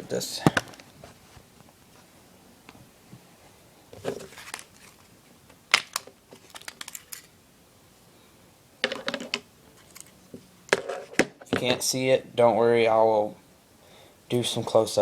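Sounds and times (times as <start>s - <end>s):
plastic and metal parts handled: 0.4s - 1.1s, 3.9s - 7.4s, 8.8s - 11.8s.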